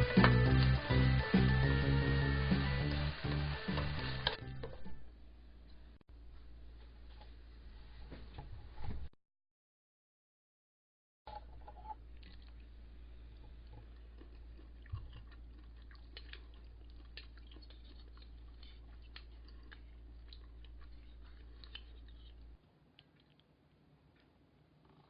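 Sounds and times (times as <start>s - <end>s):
soft chewing: 12.0s - 25.0s.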